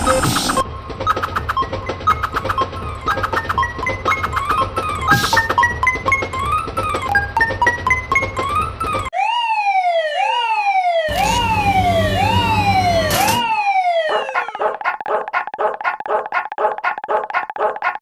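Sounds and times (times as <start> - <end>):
siren-like wail: 8.9 - 14.7.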